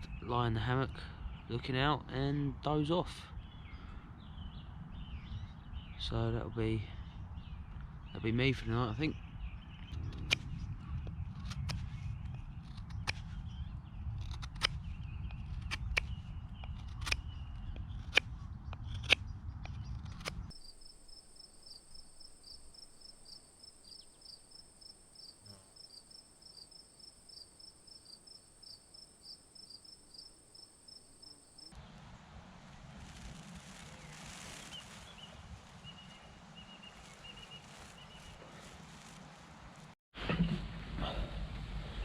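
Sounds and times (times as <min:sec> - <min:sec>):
low rumble: 0:09.1 - 0:20.5, 0:31.8 - 0:42.0
insects singing: 0:20.5 - 0:31.7.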